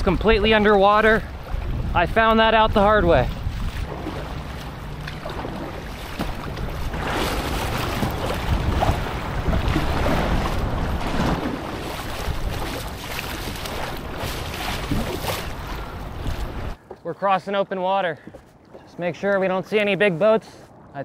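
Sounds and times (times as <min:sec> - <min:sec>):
wind buffeting microphone: 0:00.0 - 0:16.8
water lapping and splashing: 0:00.0 - 0:21.0.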